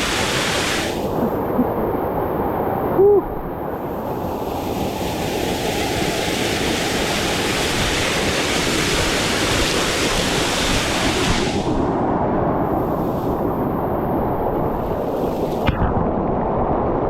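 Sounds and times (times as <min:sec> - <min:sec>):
waterfall rushing: 0:00.0 - 0:03.2.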